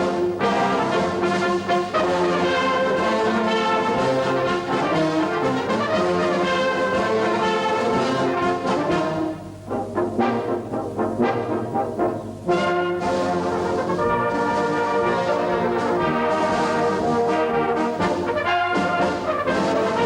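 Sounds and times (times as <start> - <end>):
brass band playing chords: 0.0 - 20.0.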